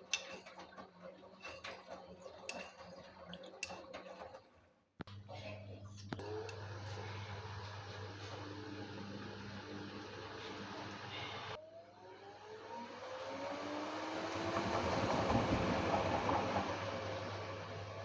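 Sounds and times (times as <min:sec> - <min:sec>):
washing machine drum whine: 0:06.1 - 0:18.0.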